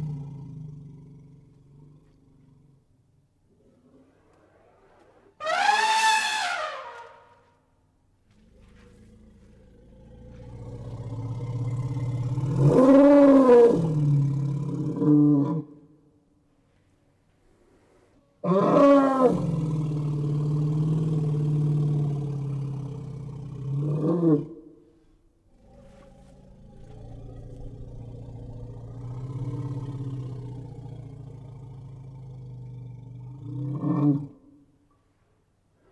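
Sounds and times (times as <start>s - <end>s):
elephant low rumble: 0.0s - 2.9s, 8.3s - 15.3s, 17.4s - 24.5s, 25.5s - 34.4s
elephant trumpeting: 5.4s - 7.3s.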